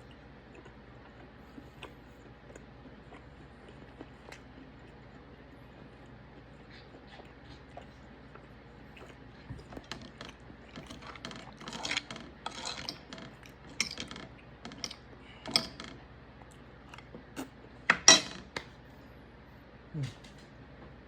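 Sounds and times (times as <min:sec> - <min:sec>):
cutlery scraping on a plate: 0:11.6 - 0:13.1, 0:14.7 - 0:15.8.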